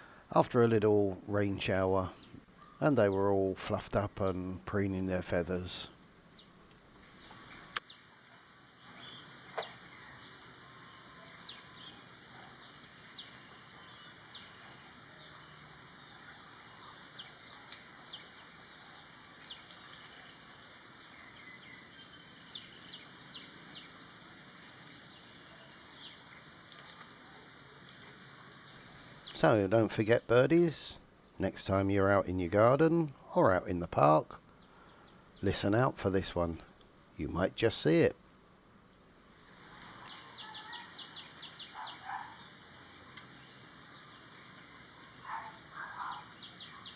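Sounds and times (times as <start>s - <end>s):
faint background hiss: 0.0s - 46.9s
high bird chirps: 39.5s - 43.3s.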